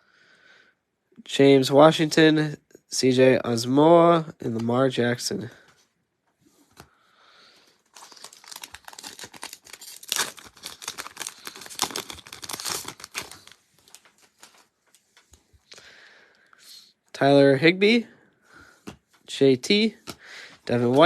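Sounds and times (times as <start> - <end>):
wrapper tearing and crinkling: 7.8 - 14.7.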